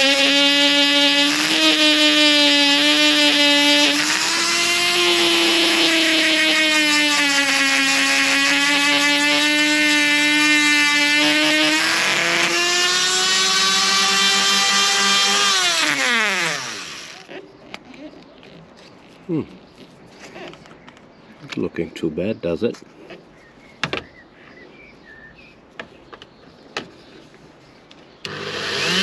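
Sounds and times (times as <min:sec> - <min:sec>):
rotary tool grinding metal: 0:00.0 - 0:17.3, 0:28.3 - 0:29.0.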